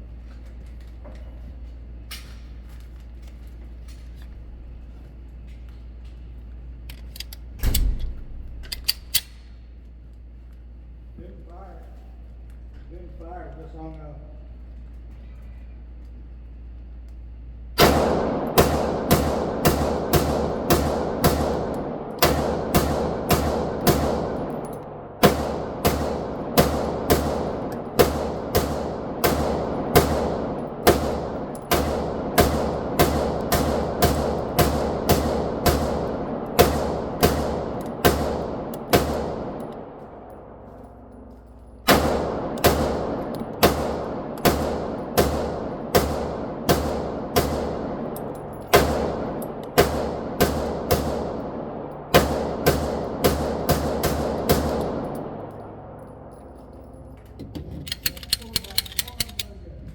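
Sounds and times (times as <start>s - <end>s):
pistol shots echoing: 17.8s - 40.7s, 41.8s - 56.9s.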